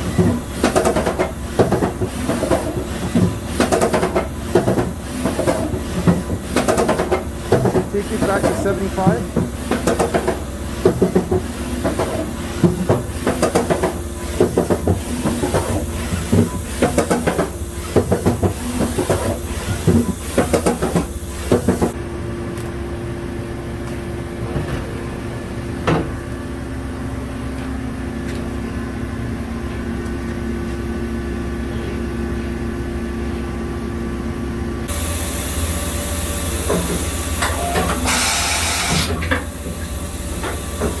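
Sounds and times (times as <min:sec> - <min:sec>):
machine steady hum: 0:00.0 - 0:41.0
loud hiss: 0:34.9 - 0:39.2.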